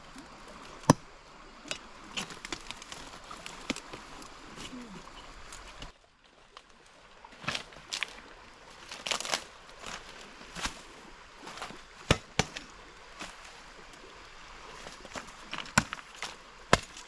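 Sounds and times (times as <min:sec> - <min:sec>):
soft rustling and scraping: 0:02.1 - 0:11.9.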